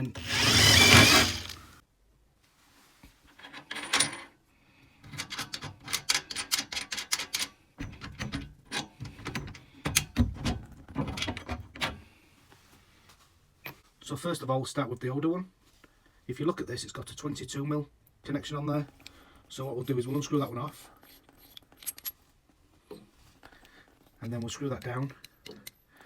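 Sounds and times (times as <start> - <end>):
loud rustling: 0.0 - 1.8.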